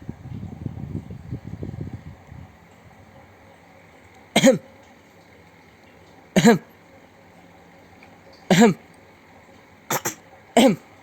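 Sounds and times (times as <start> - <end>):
person coughing ahem: 4.4 - 4.7, 6.4 - 6.7, 8.5 - 8.8, 9.9 - 10.8.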